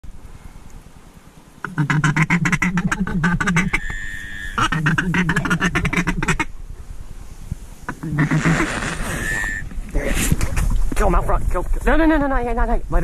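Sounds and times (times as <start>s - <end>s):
duck quacking: 1.6s - 6.5s, 7.9s - 10.1s.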